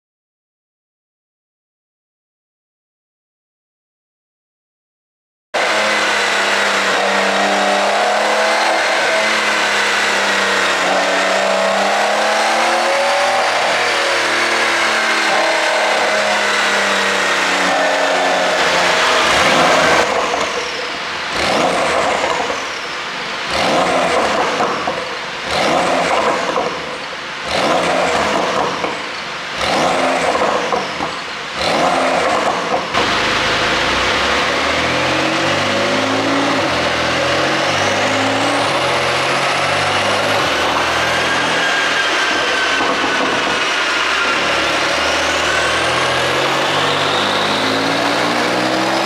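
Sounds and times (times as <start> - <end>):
car engine revving: 5.6 - 20.2, 23.4 - 24.8, 31.6 - 49.0.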